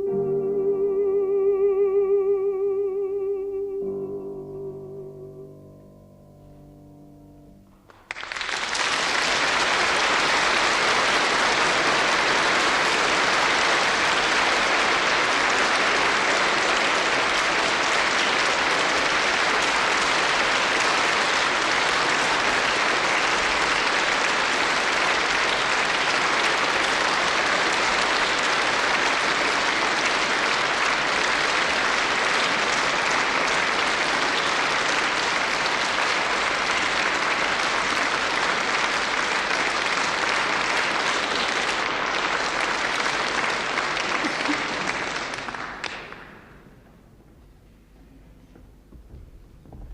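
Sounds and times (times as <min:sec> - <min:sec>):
concert audience applauding: 0:07.8 - 0:47.3.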